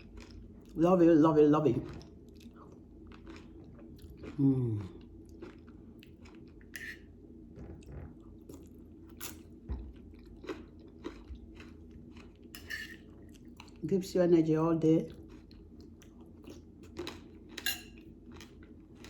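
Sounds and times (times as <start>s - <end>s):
person chewing crunchy food: 0.0s - 0.8s, 1.8s - 7.2s, 7.8s - 13.8s, 15.1s - 19.0s
person humming mm: 4.4s - 5.0s.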